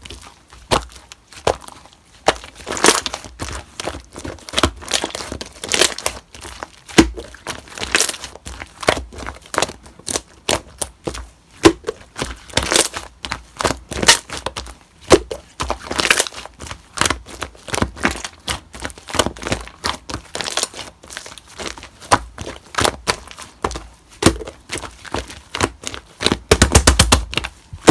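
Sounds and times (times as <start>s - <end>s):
slime squeezed by hand popping: 26.3s - 27.9s.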